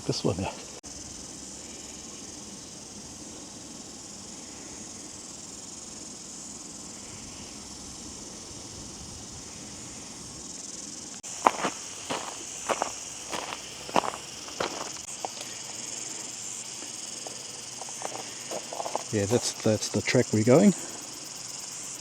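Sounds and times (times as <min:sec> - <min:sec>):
insects chirring: 0:00.0 - 0:22.0
footsteps: 0:11.2 - 0:20.0.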